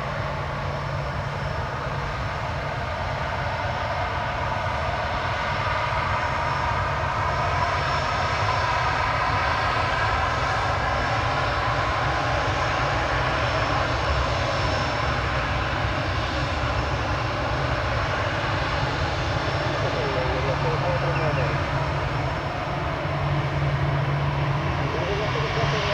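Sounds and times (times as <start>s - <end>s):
jet engines whining: 17.0s - 25.9s.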